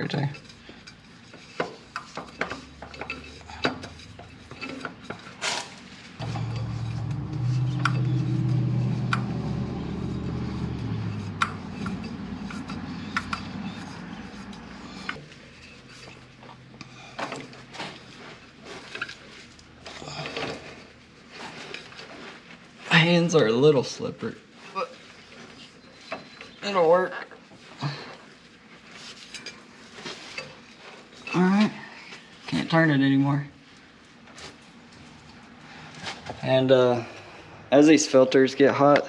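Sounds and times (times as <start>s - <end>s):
small metallic clicks and scrapes: 0.0s - 22.4s
steady low hum: 6.1s - 22.2s.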